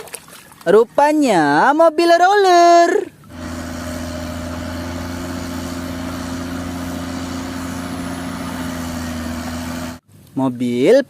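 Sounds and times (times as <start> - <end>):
road roller engine idling: 3.3 - 10.0.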